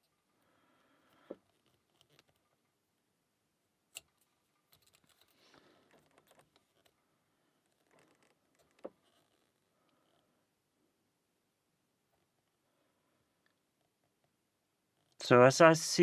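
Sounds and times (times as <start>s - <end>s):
lock pick scraping and ticking: 1.1s - 2.4s, 3.9s - 7.0s, 7.7s - 10.2s.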